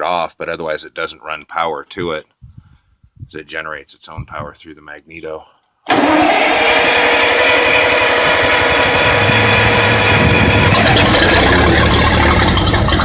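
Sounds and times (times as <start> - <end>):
engine cranking: 5.9 - 13.0.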